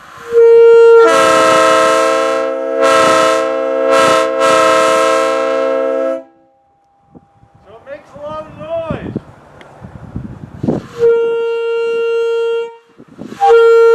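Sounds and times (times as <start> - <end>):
locomotive air horn chord: 0.0 - 6.6, 10.9 - 13.9.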